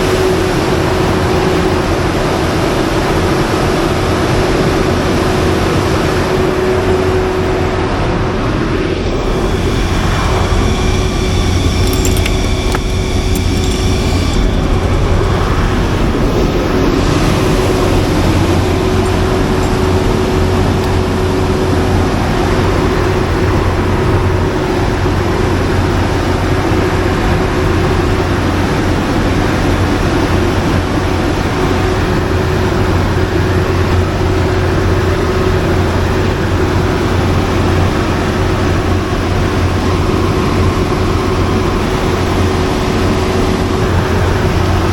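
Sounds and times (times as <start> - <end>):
generator drone: 0.0 - 44.9
fan-like rush: 4.0 - 44.9
thin high whine: 5.9 - 44.9.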